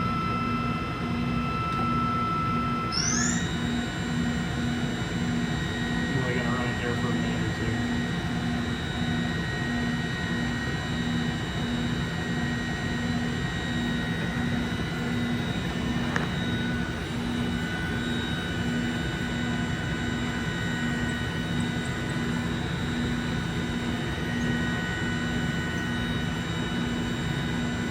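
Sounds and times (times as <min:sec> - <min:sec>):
machine hum: 0:00.0 - 0:27.9
machine spindle high whine: 0:00.0 - 0:27.9.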